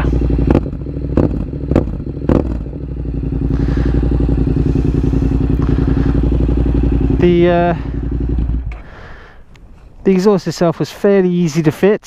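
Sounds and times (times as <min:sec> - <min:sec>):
motorcycle engine idling: 0:00.0 - 0:11.2
motorcycle exhaust pops: 0:00.4 - 0:02.8, 0:08.3 - 0:09.7.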